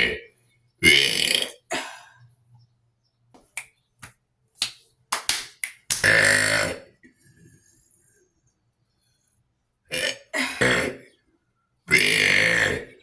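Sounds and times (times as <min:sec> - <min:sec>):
long low burp: 0:00.0 - 0:02.1, 0:06.0 - 0:07.2, 0:09.9 - 0:11.2, 0:11.9 - 0:13.0.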